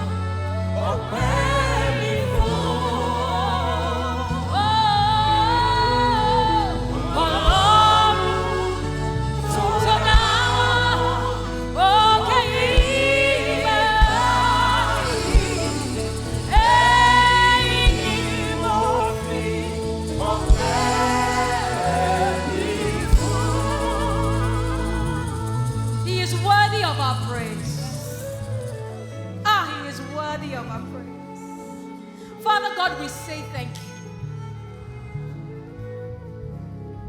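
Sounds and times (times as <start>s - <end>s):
band playing: 0.0s - 4.6s, 5.3s - 28.9s
gospel choir singing: 0.0s - 29.2s.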